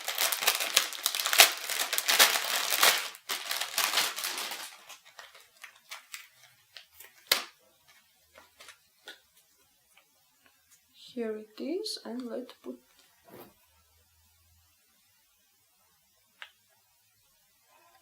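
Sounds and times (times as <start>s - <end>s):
packaging crinkling: 0.0s - 7.5s.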